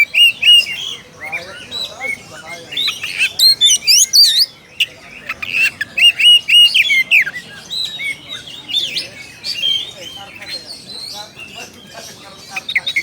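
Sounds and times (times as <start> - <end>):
bird singing whistled phrases: 2.8 - 4.5.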